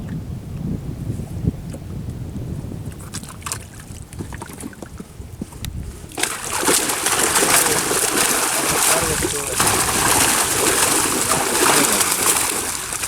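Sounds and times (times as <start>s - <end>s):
wind rumbling on microphone: 0.0s - 13.0s
small splashes and knocks: 2.9s - 13.0s
loud rush of splashing water: 6.1s - 13.0s.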